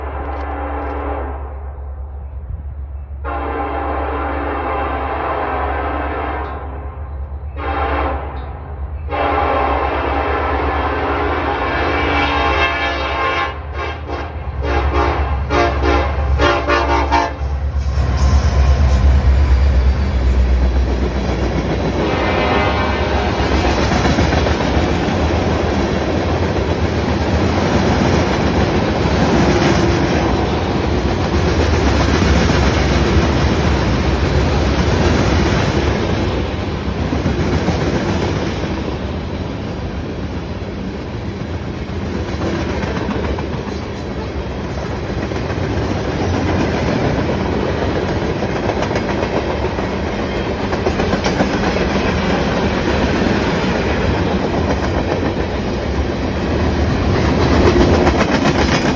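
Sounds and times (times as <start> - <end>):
train wheels rumbling and clicking: 13.7 - 58.9.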